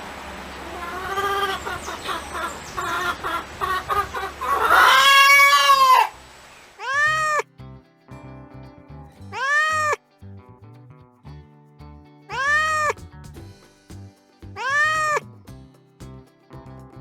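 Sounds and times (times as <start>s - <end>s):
chickens clucking: 0.6s - 6.2s
long drawn-out bird call: 0.6s - 6.2s, 6.8s - 7.4s.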